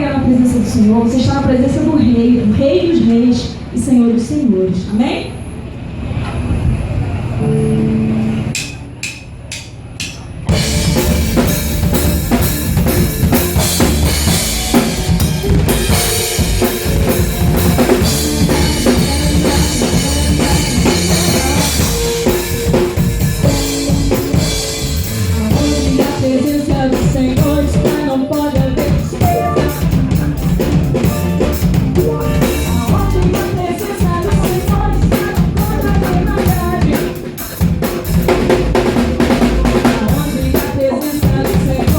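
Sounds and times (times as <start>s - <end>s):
drumstick clicks: 8.6s - 10.3s
live band playing loudly: 10.5s - 41.9s.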